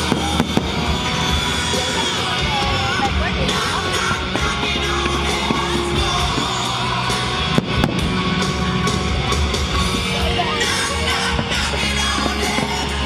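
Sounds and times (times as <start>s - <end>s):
loud music with steady bass line: 0.0s - 13.0s.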